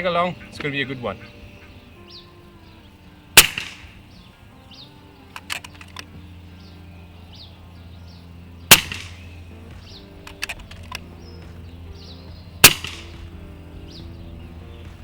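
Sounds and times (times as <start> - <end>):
background music: 0.0 - 15.0
air rifle shots: 3.3 - 4.2, 8.6 - 11.7, 12.6 - 14.0
light clicks: 5.3 - 6.2, 10.2 - 11.2.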